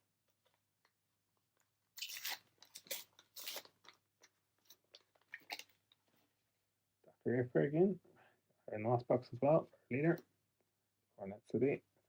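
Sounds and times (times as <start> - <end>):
foil wrapper crinkling and tearing: 2.0 - 4.0.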